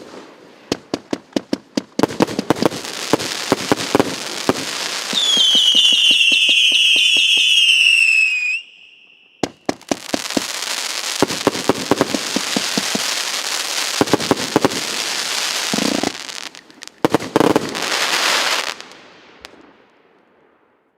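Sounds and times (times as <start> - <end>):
firework bangs: 0.0 - 19.8
firework crackling: 0.0 - 19.8
firework whistle falling in pitch: 5.1 - 9.4.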